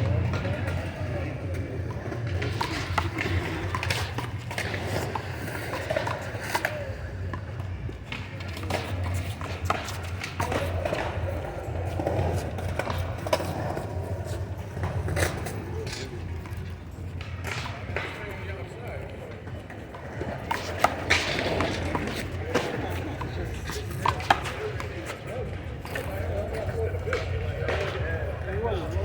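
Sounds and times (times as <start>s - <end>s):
voices: 0.0s - 29.0s.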